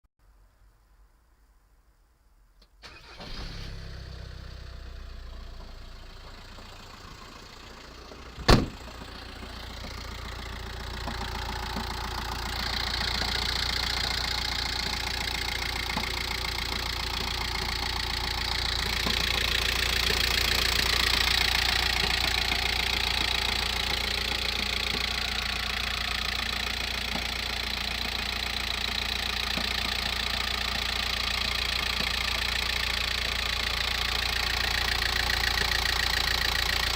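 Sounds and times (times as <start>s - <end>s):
diesel engine idling: 2.8s - 36.9s
engine knocking: 5.6s - 36.9s.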